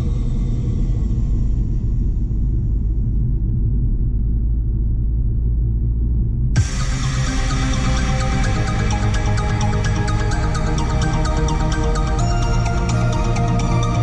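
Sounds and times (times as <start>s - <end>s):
electronic dance music: 6.6s - 14.0s.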